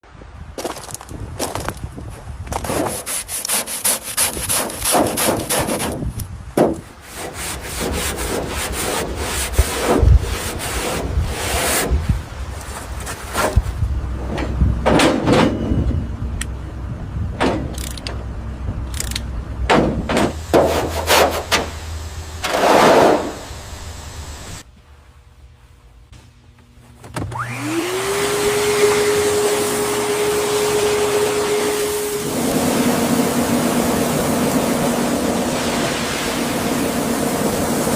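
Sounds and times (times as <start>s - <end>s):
noisy scrapes and bursts: 2.6s - 6.2s, 6.9s - 13.7s, 20.3s - 24.6s.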